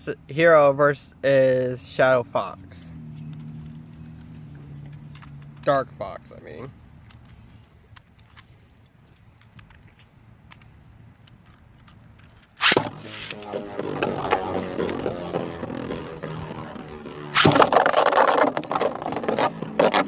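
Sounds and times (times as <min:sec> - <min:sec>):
spinning tops clashing and rattling: 0:12.6 - 0:20.0
spinning tops whirring: 0:12.6 - 0:20.0.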